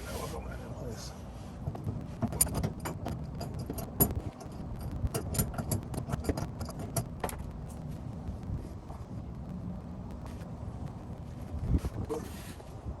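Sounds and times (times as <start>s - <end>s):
parts and tools clinking: 2.2s - 7.5s.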